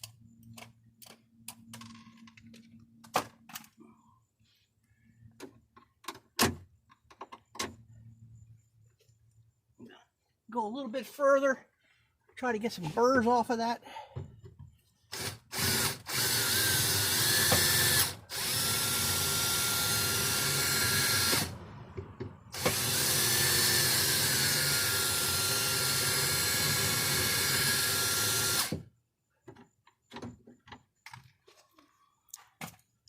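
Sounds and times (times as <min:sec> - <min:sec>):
power drill drilling rivet: 0:15.1 - 0:21.6, 0:22.5 - 0:28.9.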